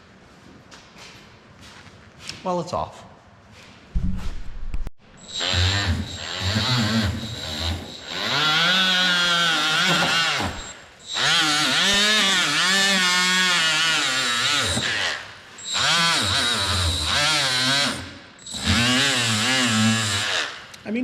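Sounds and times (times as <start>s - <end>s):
electric power tool motor whining: 5.2s - 20.7s.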